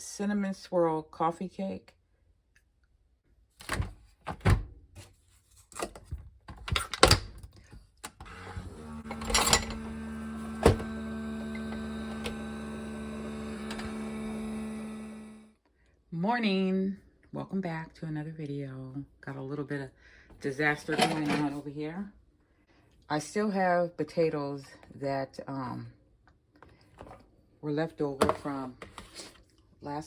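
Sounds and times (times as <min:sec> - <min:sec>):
humming drone: 0:08.5 - 0:15.5.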